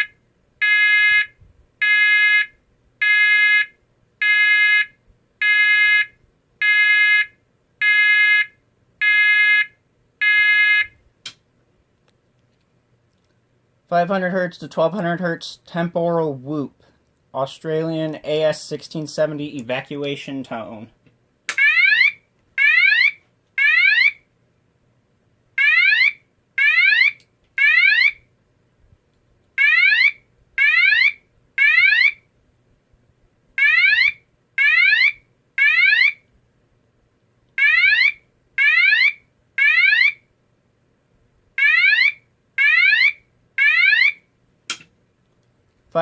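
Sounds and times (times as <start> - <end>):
alarm whooping evacuation tone: 37.6 - 40.2.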